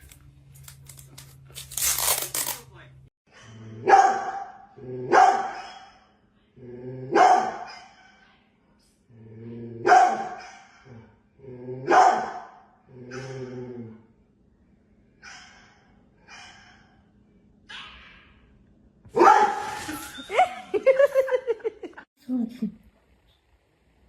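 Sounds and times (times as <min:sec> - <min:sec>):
dog barking: 0:03.3 - 0:06.0, 0:07.1 - 0:08.2, 0:09.8 - 0:10.9, 0:11.9 - 0:13.4, 0:19.2 - 0:19.6.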